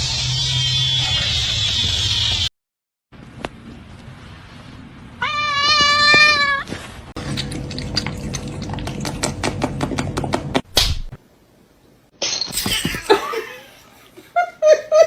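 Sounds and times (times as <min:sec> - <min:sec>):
cat meowing: 0:05.2 - 0:06.7.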